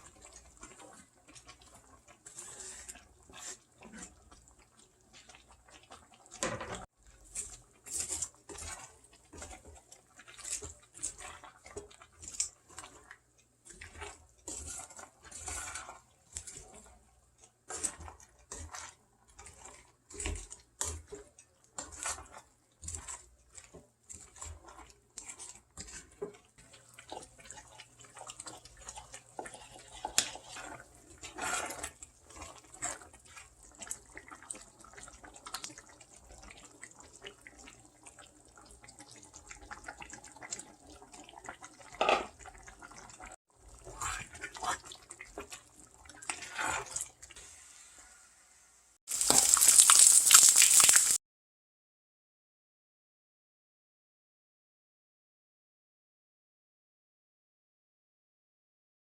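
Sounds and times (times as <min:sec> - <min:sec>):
wet food sounds: 0:00.0 - 0:51.2.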